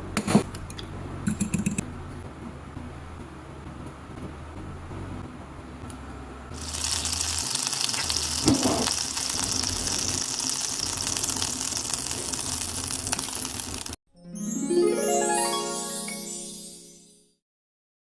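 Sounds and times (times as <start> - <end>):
food sizzling in frying oil: 6.6 - 14.0.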